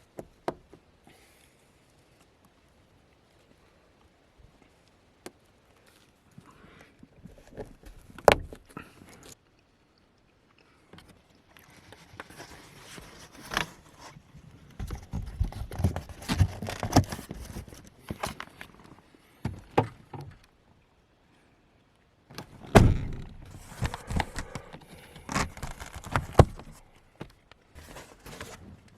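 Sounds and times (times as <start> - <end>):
clicks and knocks of handling: 14.7 - 20.5, 22.3 - 28.9.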